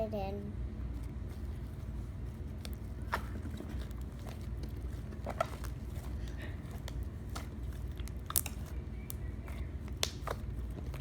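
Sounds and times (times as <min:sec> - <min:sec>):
low steady hum: 0:00.0 - 0:11.0
slime wet clicks and pops: 0:06.8 - 0:09.2, 0:09.8 - 0:10.4.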